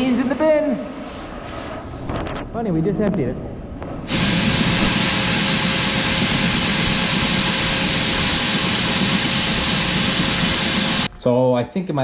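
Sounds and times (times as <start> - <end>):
bucket elevator mechanical rush: 4.0 - 11.1.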